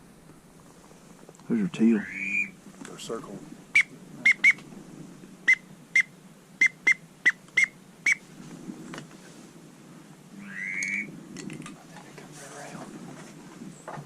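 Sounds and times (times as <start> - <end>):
duck whistle peeps: 2.0 - 2.6, 3.7 - 4.6, 5.5 - 8.2, 10.4 - 11.1.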